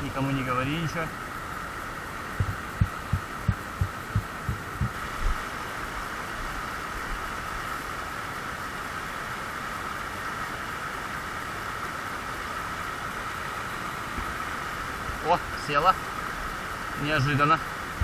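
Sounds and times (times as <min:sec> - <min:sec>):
mountain stream running: 0:00.0 - 0:18.0
soft low thumps: 0:02.4 - 0:05.0.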